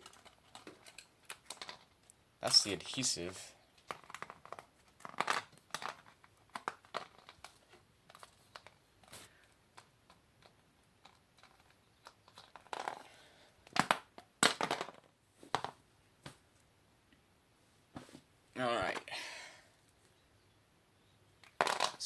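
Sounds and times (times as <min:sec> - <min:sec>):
creaks and sharp snaps: 0:00.0 - 0:02.7, 0:03.7 - 0:13.0
plastic and glass crackling: 0:00.0 - 0:13.0
loud cracks: 0:13.7 - 0:15.0.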